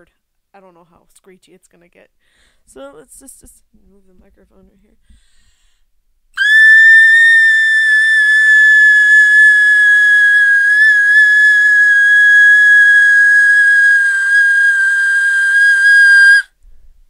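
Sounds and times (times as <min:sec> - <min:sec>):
person making whistle-like noise: 0:06.4 - 0:16.6.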